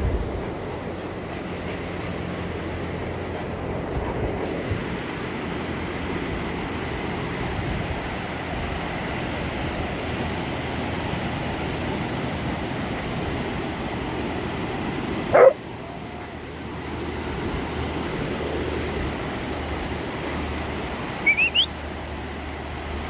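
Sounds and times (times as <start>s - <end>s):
surf: 0.0s - 23.0s
wind: 0.0s - 23.0s
dog barking: 15.3s - 16.0s.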